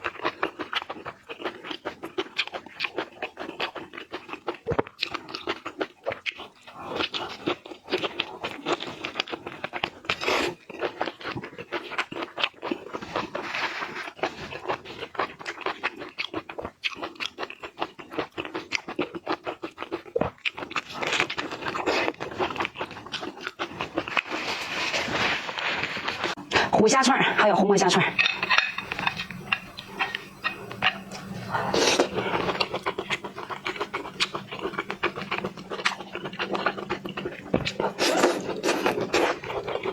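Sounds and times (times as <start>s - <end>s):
person chewing crunchy food: 0.0s - 26.7s, 28.1s - 39.9s.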